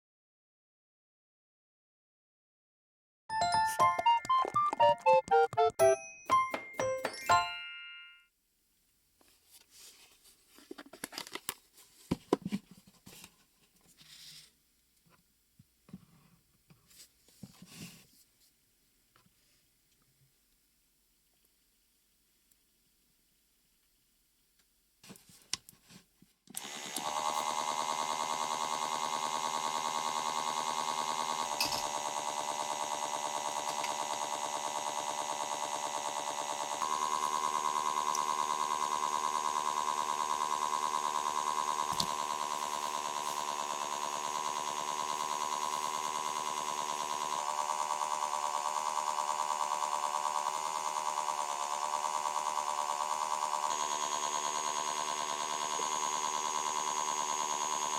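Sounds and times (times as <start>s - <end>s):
mini washing machine motor humming: 26.6s - 57.9s.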